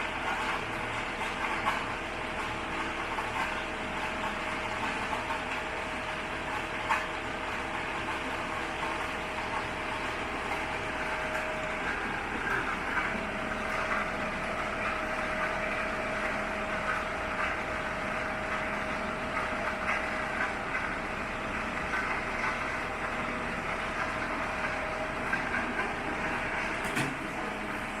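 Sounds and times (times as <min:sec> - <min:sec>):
lathe running: 0:00.0 - 0:28.0.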